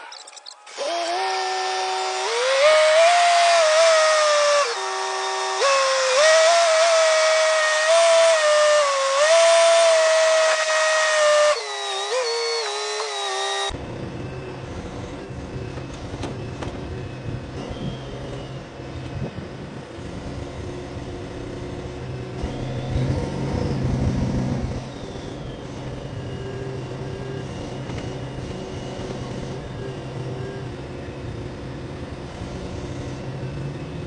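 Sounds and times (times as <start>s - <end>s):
high-pitched mechanical whine: 0.0s - 34.0s
low engine-like rumble: 13.7s - 34.0s.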